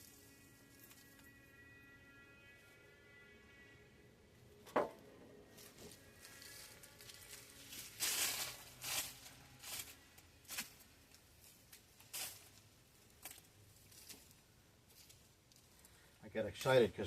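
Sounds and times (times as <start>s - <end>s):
soil being dug and scraped: 0.0s - 2.6s, 5.5s - 16.0s.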